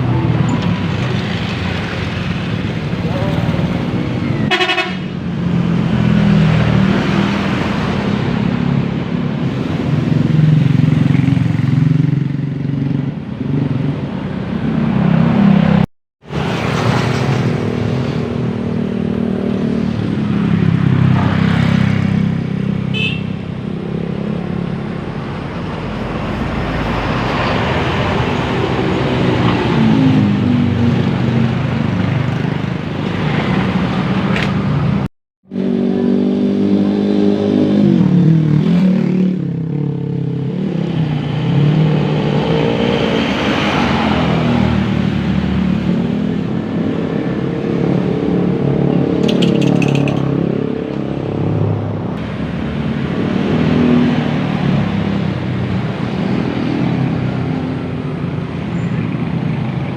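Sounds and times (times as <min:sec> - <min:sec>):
traffic noise: 0:00.0 - 0:59.9
bus engines accelerating past: 0:23.6 - 0:59.9.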